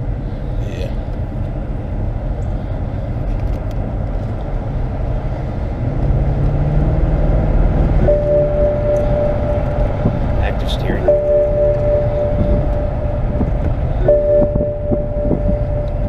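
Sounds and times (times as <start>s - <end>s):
car engine rumble: 0.0s - 16.0s
steady higher tone: 7.2s - 16.0s.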